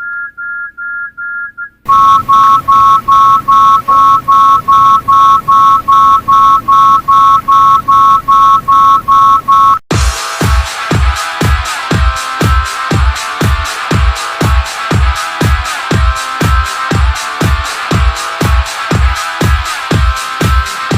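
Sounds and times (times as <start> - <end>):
low-battery alert beeping: 1.9 - 9.8
dance music with thumping beat: 2.1 - 20.9.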